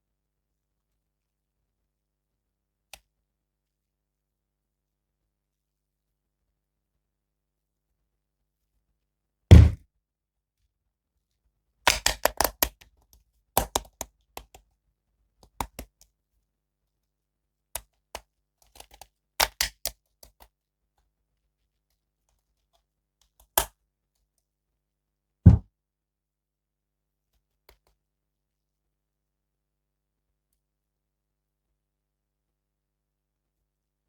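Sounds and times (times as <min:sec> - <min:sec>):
heavy thunk: 0:09.5 - 0:09.8.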